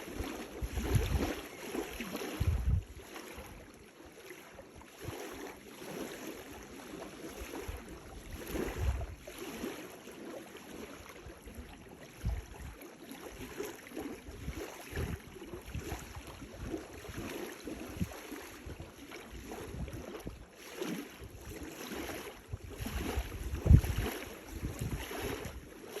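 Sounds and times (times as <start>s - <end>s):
waves lapping on shore: 0.0s - 26.0s
wind buffeting microphone: 0.2s - 1.4s, 2.3s - 3.0s, 7.6s - 9.2s, 14.4s - 20.4s, 22.5s - 25.6s.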